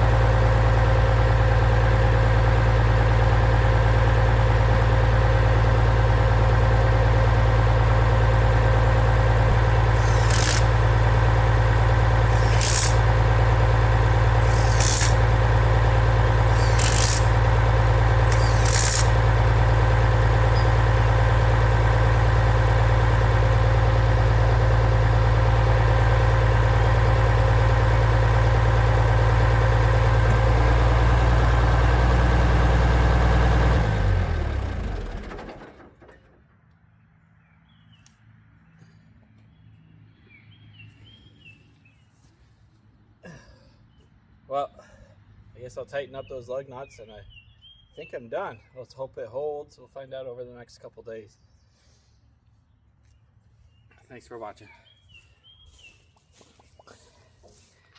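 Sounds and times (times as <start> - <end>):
tractor engine running: 0.0 - 36.9
sharp clicks: 9.5 - 10.9, 12.3 - 13.2, 14.3 - 15.4, 16.4 - 17.6, 18.2 - 19.3.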